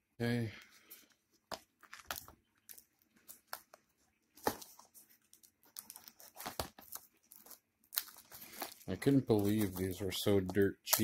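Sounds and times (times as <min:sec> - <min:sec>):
plastic shrink wrap crinkling: 0:04.4 - 0:11.0.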